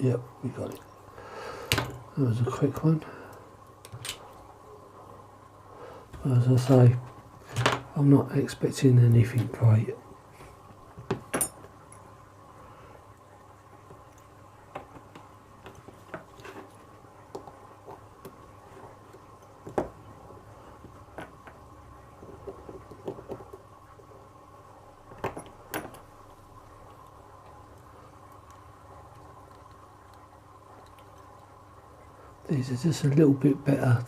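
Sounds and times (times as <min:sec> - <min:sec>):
faint steady hum: 0:00.0 - 0:34.0.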